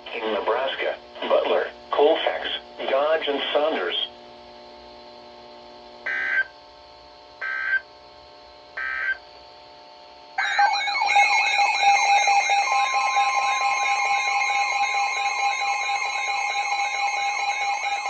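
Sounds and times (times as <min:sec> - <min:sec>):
electronic alert tone with warbling: 0:10.4 - 0:18.0.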